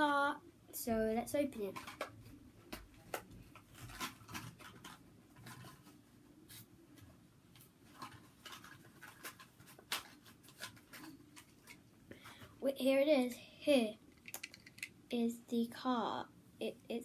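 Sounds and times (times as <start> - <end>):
blister package crinkling: 14.1 - 14.9.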